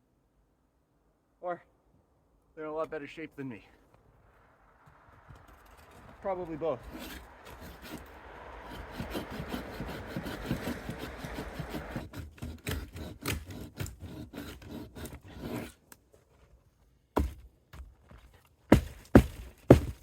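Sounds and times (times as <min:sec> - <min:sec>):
handsaw cutting wood: 0:06.8 - 0:15.8, 0:18.7 - 0:20.0.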